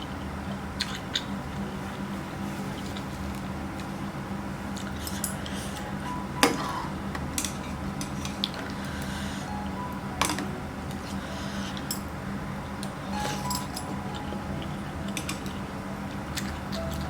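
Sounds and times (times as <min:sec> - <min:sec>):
low steady hum: 0:00.0 - 0:17.0
utensils clinking against bowl: 0:11.0 - 0:12.1, 0:13.2 - 0:14.3.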